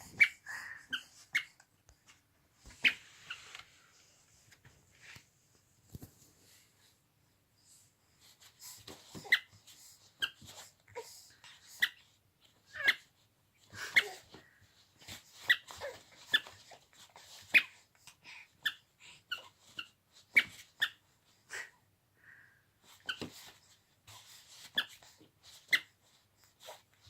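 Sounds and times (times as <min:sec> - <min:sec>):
rubber squeaky toy squeaking: 0:00.0 - 0:01.6, 0:02.8 - 0:03.0, 0:09.0 - 0:10.7, 0:11.7 - 0:13.2, 0:13.8 - 0:14.4, 0:15.1 - 0:17.8, 0:18.6 - 0:21.1, 0:22.9 - 0:26.0.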